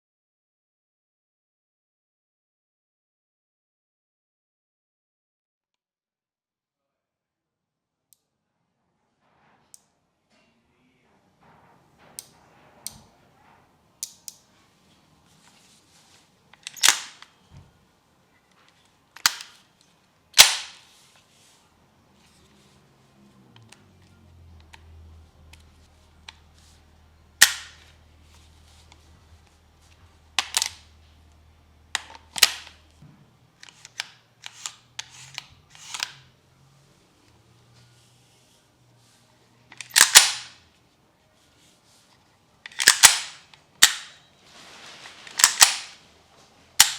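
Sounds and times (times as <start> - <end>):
mechanical clicks of gun handling: 14.0 - 14.4, 16.5 - 17.3, 19.2 - 19.6, 20.4 - 20.8, 27.4 - 27.9, 30.4 - 30.8, 31.9 - 32.8, 33.6 - 36.2, 39.7 - 40.6, 42.6 - 44.2, 45.3 - 46.0
airsoft gun firing shots: 20.4 - 20.8, 39.9 - 40.5, 42.8 - 44.1.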